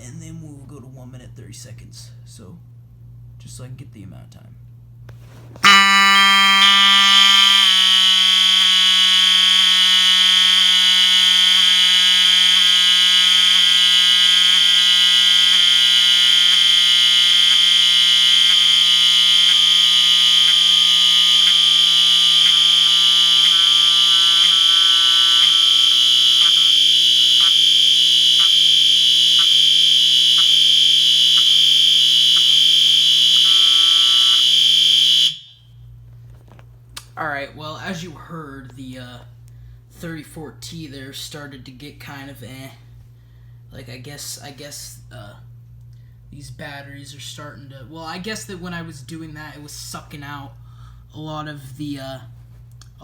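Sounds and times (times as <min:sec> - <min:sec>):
buzzing alarm horn: 0:05.2 - 0:35.9
fire alarm horns sounding: 0:05.2 - 0:36.6.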